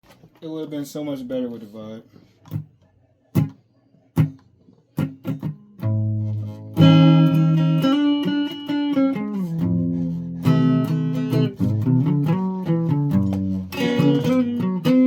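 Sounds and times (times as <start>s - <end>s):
guitar plucked and strummed: 3.4s - 3.6s, 4.2s - 15.0s.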